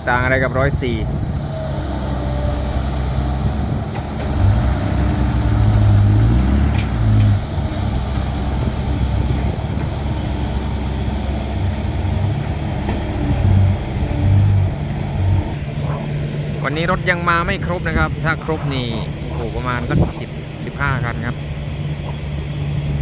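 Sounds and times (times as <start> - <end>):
diesel engine droning: 0.0 - 23.0.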